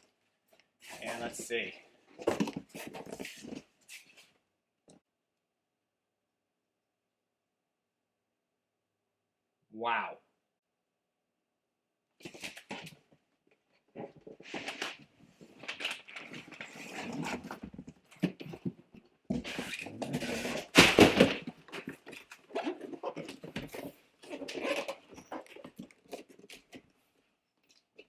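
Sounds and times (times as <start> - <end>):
packaging rustling and crinkling: 14.2 - 26.8.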